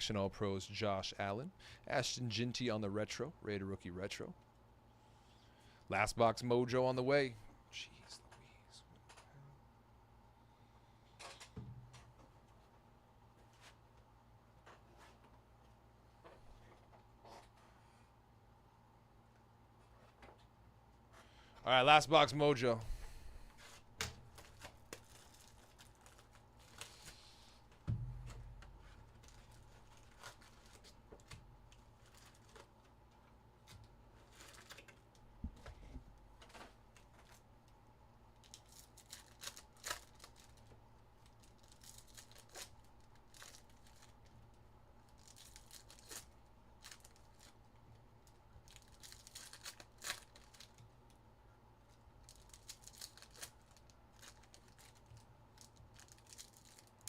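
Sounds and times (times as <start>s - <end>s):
wrapper tearing and crinkling: 24.3s - 27.0s, 38.4s - 44.2s, 45.1s - 50.8s, 52.2s - 57.0s
dull thumps: 27.8s - 28.7s.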